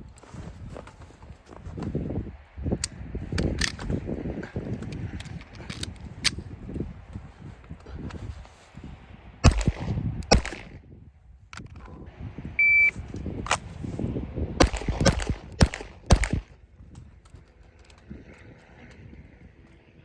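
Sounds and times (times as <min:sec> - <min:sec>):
rifle shots: 0:09.4 - 0:10.8, 0:14.6 - 0:16.6
short electronic beep: 0:12.6 - 0:12.9.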